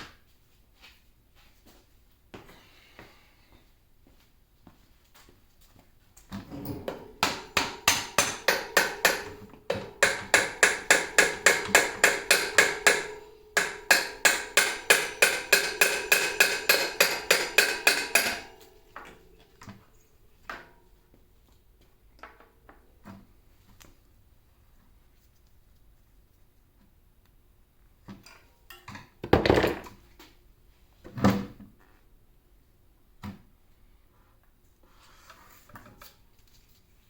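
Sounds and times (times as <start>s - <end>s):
e-bike hub motor knocking: 6.8s - 19.2s.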